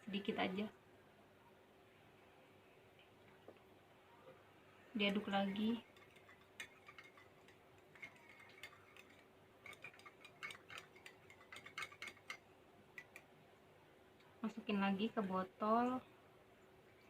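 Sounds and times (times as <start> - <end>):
stirrer clinking against glass beaker: 5.0 - 12.4, 13.0 - 13.3.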